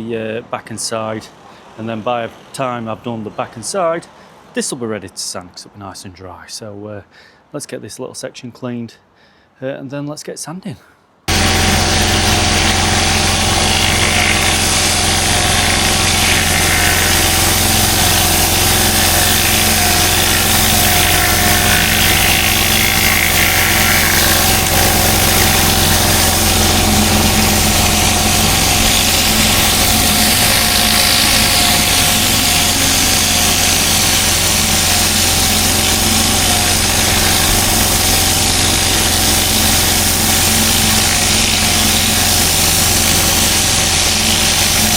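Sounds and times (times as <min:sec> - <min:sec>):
high-pressure water jet hissing: 0:11.3 - 0:44.9
pressure washer motor hum: 0:11.3 - 0:44.9.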